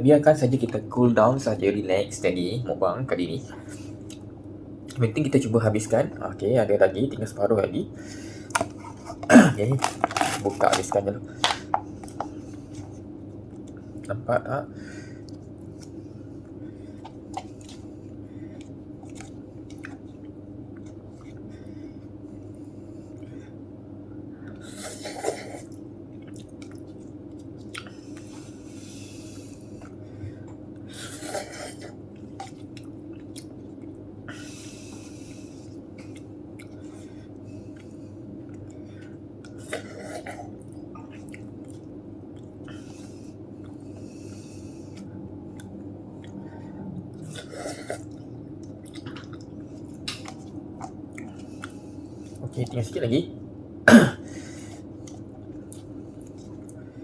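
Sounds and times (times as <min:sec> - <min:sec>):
steady low hum: 0:00.0 - 0:57.0
quiet chewing: 0:03.6 - 0:05.0, 0:11.4 - 0:14.2, 0:15.2 - 0:23.4, 0:24.4 - 0:52.8, 0:54.5 - 0:57.0.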